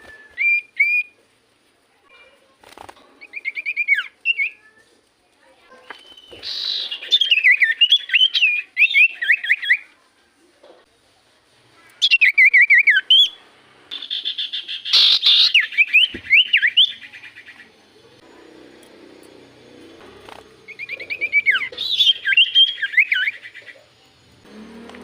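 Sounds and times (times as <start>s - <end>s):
bird singing warbling whistles: 0.0s - 1.2s, 5.8s - 9.8s, 12.0s - 17.6s, 20.7s - 23.8s.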